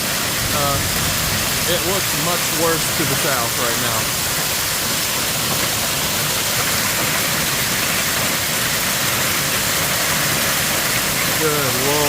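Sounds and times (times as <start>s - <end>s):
strong wind gusts: 0.0s - 2.2s
driving rain: 0.0s - 12.0s.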